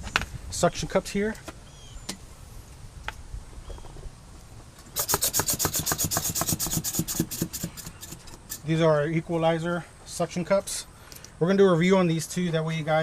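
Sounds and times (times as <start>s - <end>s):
rasping rubbing strokes: 5.0s - 8.8s.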